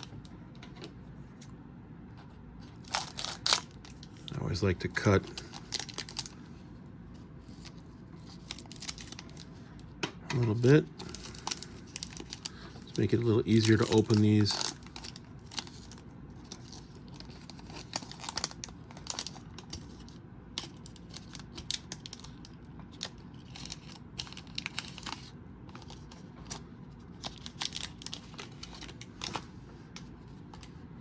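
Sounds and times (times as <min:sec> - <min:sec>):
wrapper crackling: 0:02.8 - 0:06.4, 0:07.4 - 0:09.6, 0:10.5 - 0:29.5
scissors snipping wrapper: 0:02.9 - 0:04.4, 0:11.0 - 0:20.0.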